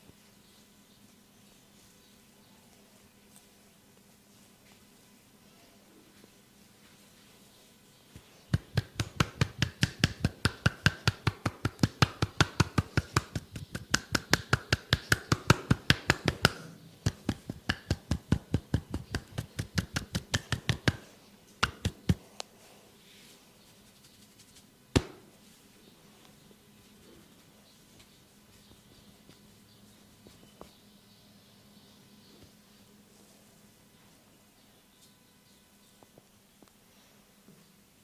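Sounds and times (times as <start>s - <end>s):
hands slapping in fast rhythm: 8.5s - 22.3s, 25.0s - 25.2s.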